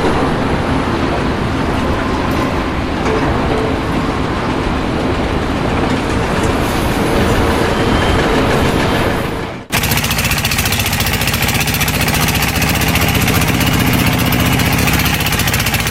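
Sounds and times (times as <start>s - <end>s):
mechanical rumble and rattle: 0.0s - 15.9s.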